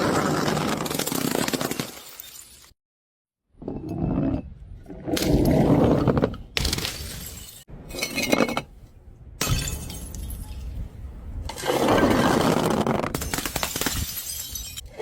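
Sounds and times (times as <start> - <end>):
glass bottles smashing: 0.9 - 2.7, 6.6 - 8.5, 9.4 - 10.6, 13.2 - 14.9.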